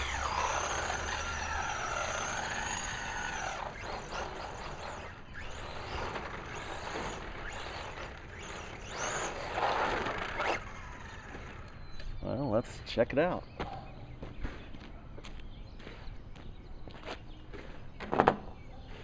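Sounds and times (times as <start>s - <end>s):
electric motor whining: 0.0s - 12.2s.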